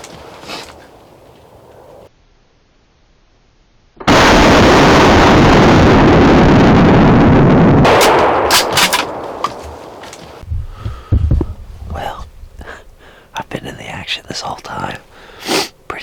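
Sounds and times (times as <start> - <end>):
loud distorted gunshot: 4.0 - 6.2, 7.8 - 9.5.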